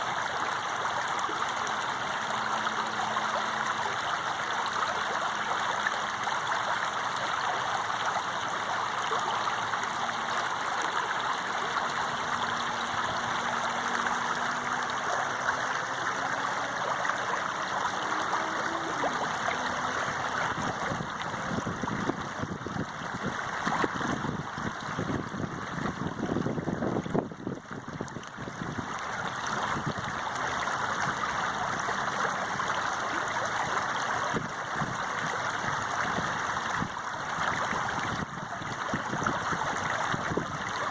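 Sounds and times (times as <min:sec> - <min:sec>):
running water flowing: 0:00.0 - 0:40.9
water splashing: 0:00.0 - 0:40.9.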